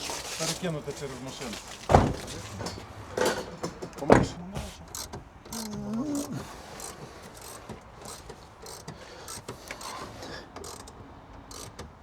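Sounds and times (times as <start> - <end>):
man humming: 5.5 - 6.7.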